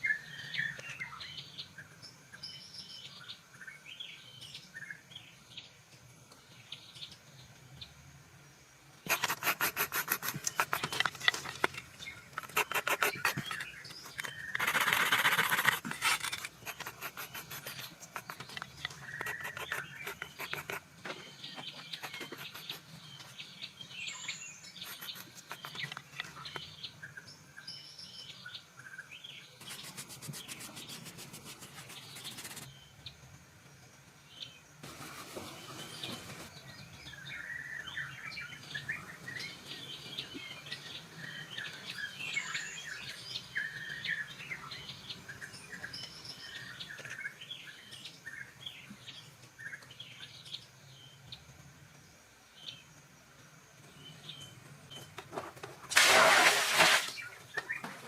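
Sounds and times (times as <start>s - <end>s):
birds chirping: 9.0s - 33.3s, 34.2s - 55.4s
quick rubbing or scraping strokes: 9.1s - 20.9s, 21.6s - 23.0s, 24.8s - 26.3s, 29.6s - 32.7s, 55.9s - 57.3s.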